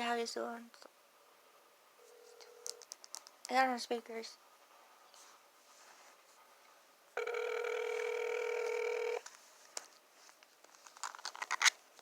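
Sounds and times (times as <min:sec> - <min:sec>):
telephone ringback tone: 0:02.0 - 0:02.8, 0:07.2 - 0:09.2.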